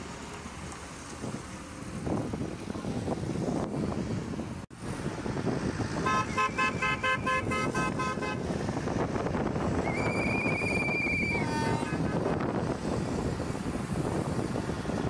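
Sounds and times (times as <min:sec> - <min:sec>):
wind and road noise: 0:00.0 - 0:15.0
long high-pitched horn blast: 0:06.0 - 0:08.4, 0:11.4 - 0:12.1
car horns beeping: 0:06.0 - 0:08.5, 0:10.0 - 0:12.3.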